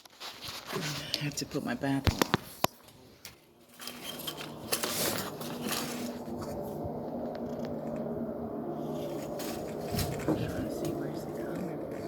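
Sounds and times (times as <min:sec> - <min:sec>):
handling clicks and rustling: 0:02.0 - 0:06.6
steady low hum: 0:03.0 - 0:12.0.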